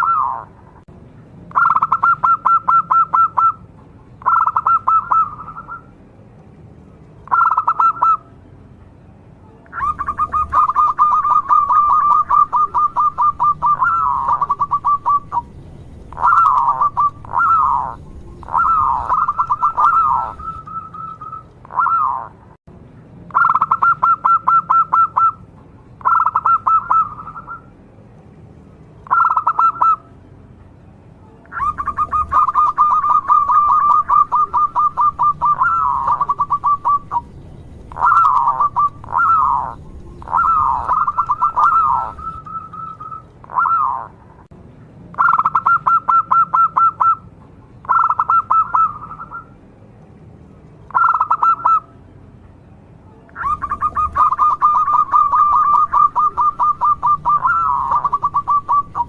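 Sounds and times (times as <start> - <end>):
dove cooing: 0.0 - 0.6, 1.5 - 3.6, 4.2 - 5.9, 7.3 - 8.2, 9.7 - 22.4, 23.4 - 25.4, 26.0 - 27.7, 29.1 - 30.0, 31.5 - 44.2, 47.9 - 49.5, 50.9 - 51.8, 53.4 - 59.0.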